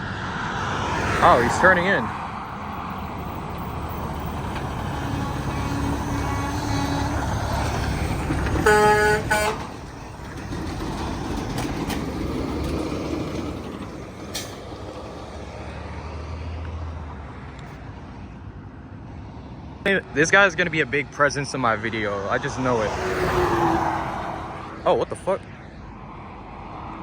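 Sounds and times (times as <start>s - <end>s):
truck engines running: 0.0s - 26.5s
road traffic: 0.0s - 27.0s
truck air horn blast: 4.5s - 10.0s.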